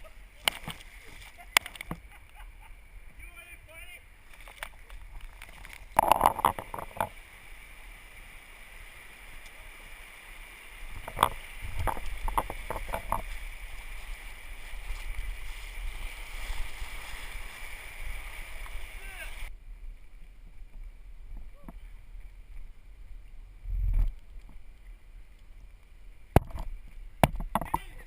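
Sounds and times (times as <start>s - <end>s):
river water running and splashing: 2.8s - 22.8s.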